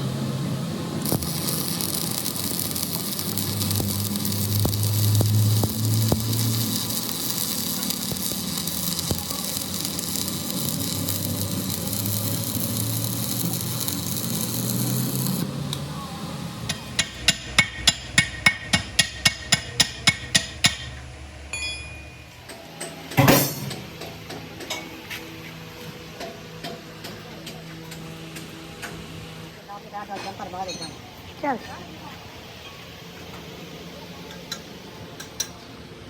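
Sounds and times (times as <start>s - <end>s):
steady hissing: 0.8s - 15.5s
rapid hammer blows on metal: 16.7s - 21.1s.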